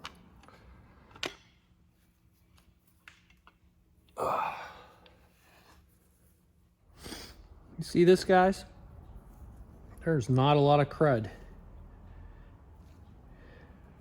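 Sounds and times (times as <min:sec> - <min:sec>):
man sighing: 0:04.2 - 0:05.2.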